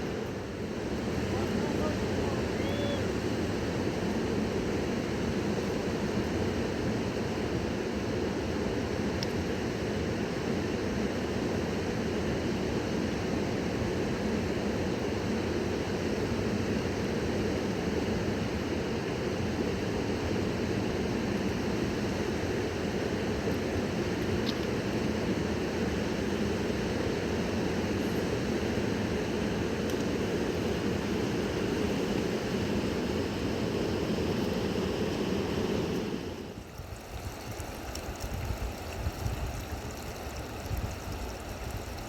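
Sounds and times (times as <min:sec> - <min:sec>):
river water rushing: 0:36.4 - 0:42.0.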